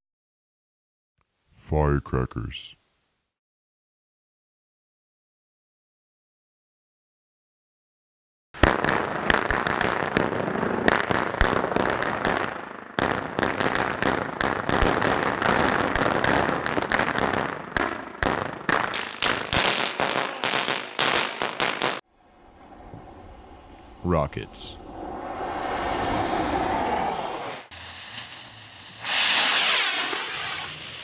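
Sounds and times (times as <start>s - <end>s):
firecrackers going off: 8.6s - 22.1s, 25.0s - 31.0s.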